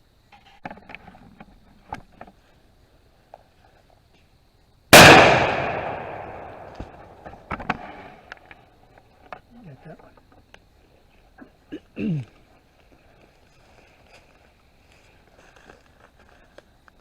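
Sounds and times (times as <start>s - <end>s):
shotgun shot: 4.9s - 7.1s
faint clicks and rustles: 12.3s - 17.0s.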